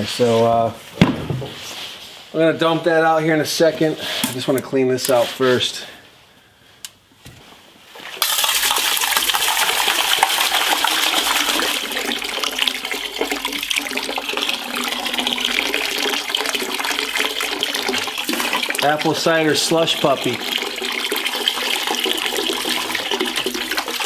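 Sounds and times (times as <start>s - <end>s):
liquid pouring and splashing: 7.9s - 24.0s.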